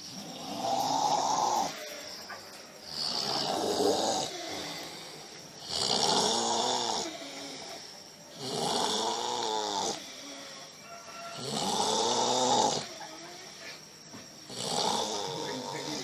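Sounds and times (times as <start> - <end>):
quiet breathing: 0.0 - 6.2, 6.8 - 11.7
person snoring heavily: 0.1 - 2.2, 2.8 - 13.8, 14.5 - 16.0.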